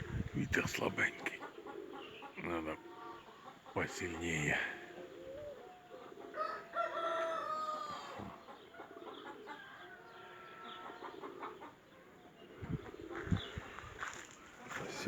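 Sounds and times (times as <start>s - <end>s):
faint chicken calls: 0.0s - 15.0s
rooster crowing: 6.3s - 8.2s.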